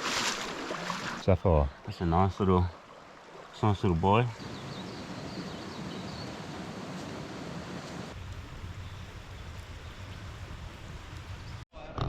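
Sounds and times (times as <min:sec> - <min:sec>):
river water rushing: 0:00.0 - 0:01.3, 0:02.7 - 0:08.1.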